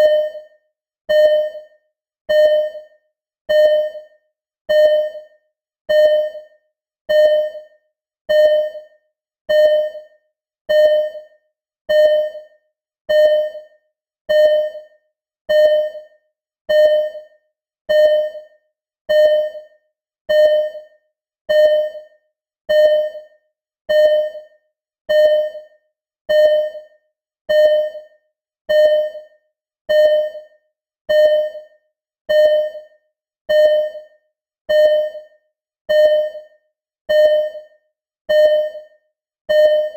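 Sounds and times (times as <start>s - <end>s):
heart monitor beeping: 0.0s - 0.5s, 1.1s - 1.7s, 2.3s - 2.9s, 3.5s - 4.1s, 4.7s - 5.3s, 5.9s - 6.5s, 7.1s - 7.7s, 8.3s - 8.9s, 9.5s - 10.1s, 10.7s - 11.3s, 11.9s - 12.5s, 13.1s - 13.7s, 14.3s - 14.9s, 15.5s - 16.1s, 16.7s - 17.3s, 17.9s - 18.5s, 19.1s - 19.7s, 20.3s - 20.9s, 21.5s - 22.1s, 22.7s - 23.3s, 23.9s - 24.5s, 25.1s - 25.7s, 26.3s - 26.9s, 27.5s - 28.1s, 28.7s - 29.3s, 29.9s - 30.5s, 31.1s - 31.7s, 32.3s - 32.9s, 33.5s - 34.1s, 34.7s - 35.3s, 35.9s - 36.5s, 37.1s - 37.7s, 38.3s - 38.9s, 39.5s - 39.9s.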